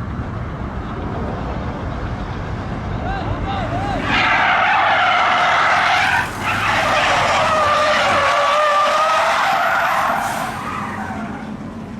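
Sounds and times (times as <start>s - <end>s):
tyre road noise: 0.0s - 11.9s
car tyres squealing: 3.7s - 11.7s.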